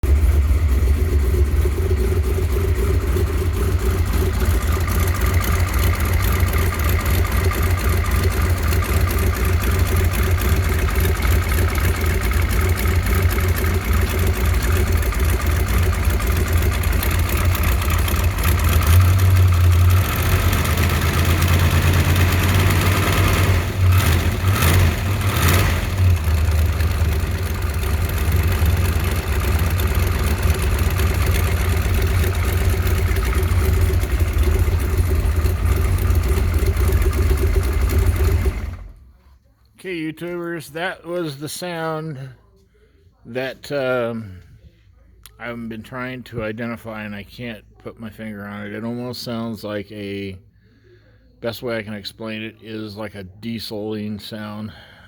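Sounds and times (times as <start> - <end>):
car engine running: 0.0 - 39.3
short sharp engine sounds: 0.0 - 41.8.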